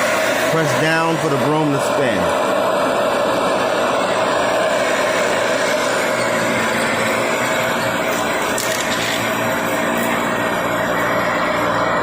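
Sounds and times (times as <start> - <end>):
vacuum cleaner running: 0.0 - 12.0.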